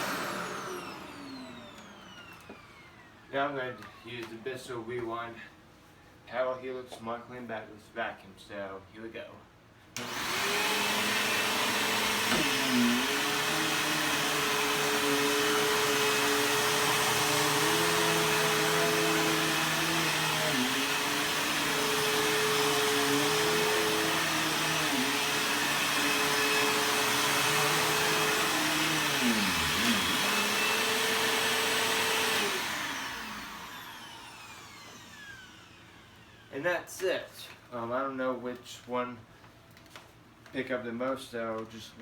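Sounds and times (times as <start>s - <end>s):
vacuum cleaner running: 0.0s - 4.3s, 10.0s - 36.5s.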